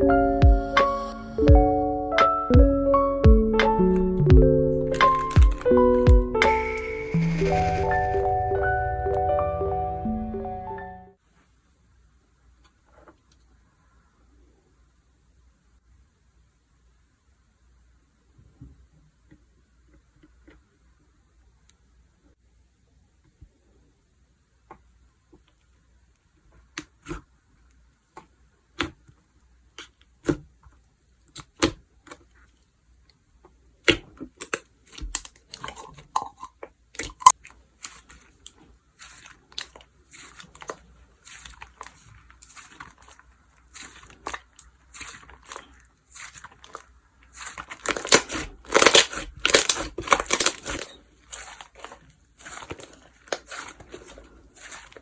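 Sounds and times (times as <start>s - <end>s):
slime crackling and crunching: 3.9s - 8.4s, 36.9s - 55.0s.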